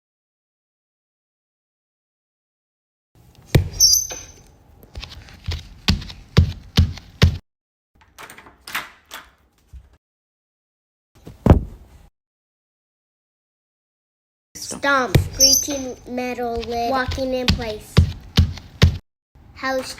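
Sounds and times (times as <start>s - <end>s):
footsteps walking in place: 4.8s - 7.4s, 15.2s - 19.0s
foot stomp: 5.0s - 7.4s, 11.2s - 11.8s, 16.5s - 19.0s
door opening: 8.0s - 10.0s.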